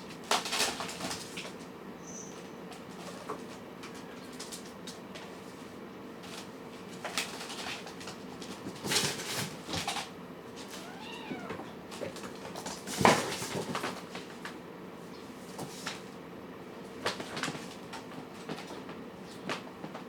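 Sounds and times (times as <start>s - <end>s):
cat meowing: 10.7s - 11.8s.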